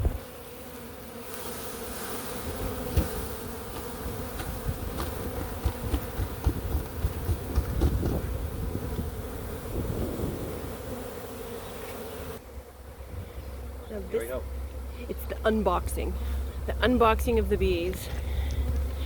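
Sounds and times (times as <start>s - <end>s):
bees buzzing: 0.0s - 19.0s
low bumps: 2.6s - 10.6s.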